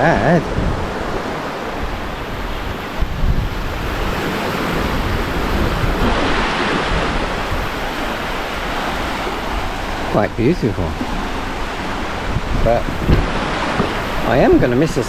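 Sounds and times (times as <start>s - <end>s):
waves washing onto beach: 0.0s - 15.0s
wind rumbling on microphone: 0.0s - 15.0s.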